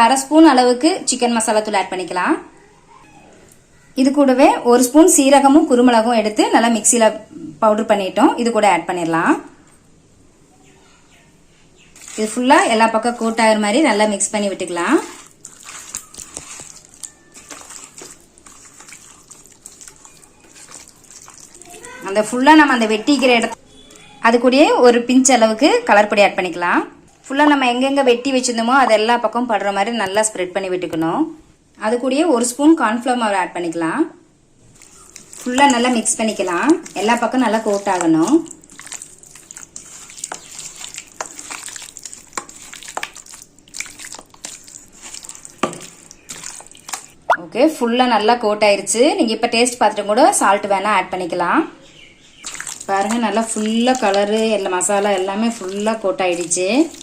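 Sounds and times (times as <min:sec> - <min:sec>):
wet squelching of marinade mixing: 0:11.3 - 0:23.9, 0:34.6 - 0:47.4, 0:51.8 - 0:57.0.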